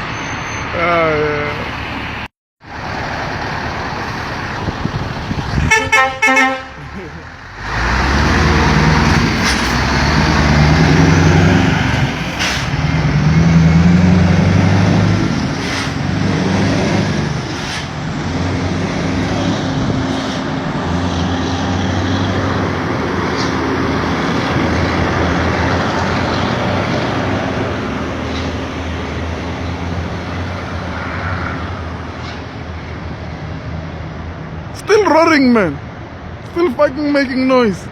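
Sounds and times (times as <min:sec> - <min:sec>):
diesel truck engine roaring: 0:00.0 - 0:37.9.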